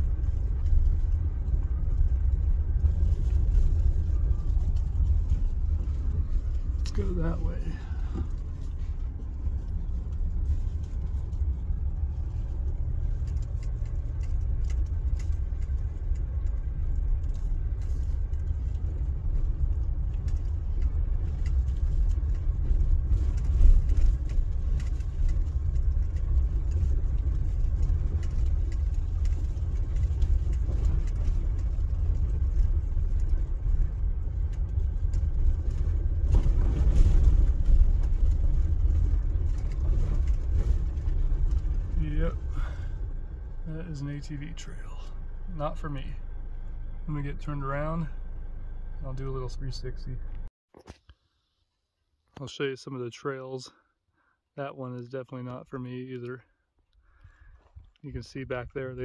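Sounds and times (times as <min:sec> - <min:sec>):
vehicle knocks and rattles: 0:00.0 - 0:43.6
vehicle engine and tyres rumbling: 0:00.0 - 0:59.0.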